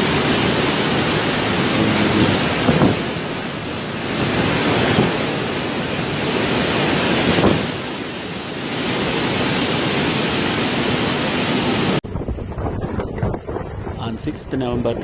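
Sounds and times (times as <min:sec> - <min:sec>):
strong wind on microphone: 0:00.0 - 0:08.0, 0:10.6 - 0:15.0
rough sea surf: 0:00.0 - 0:12.0.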